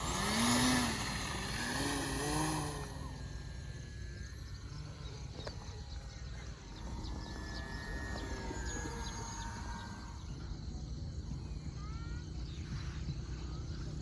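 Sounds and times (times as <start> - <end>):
model plane motor whining: 0.0 - 11.1.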